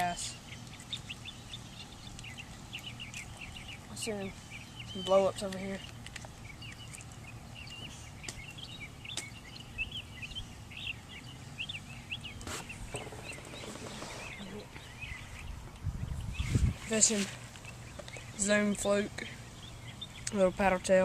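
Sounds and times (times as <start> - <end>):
low background rumble: 0.0 - 21.0
small birds chirping: 0.0 - 21.0.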